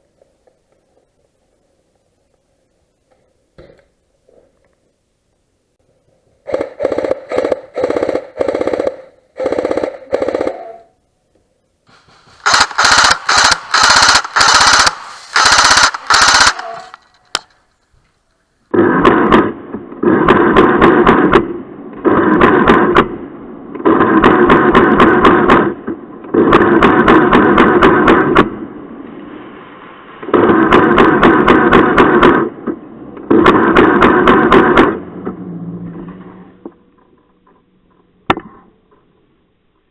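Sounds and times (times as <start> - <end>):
airsoft guns firing bursts: 6.5 - 10.8, 11.9 - 17.0, 23.9 - 25.8.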